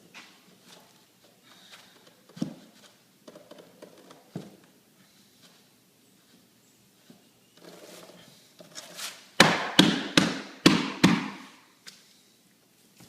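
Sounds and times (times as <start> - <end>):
floor plank being handled: 0.0 - 12.0
sharp knocks on floor plank: 9.4 - 11.5.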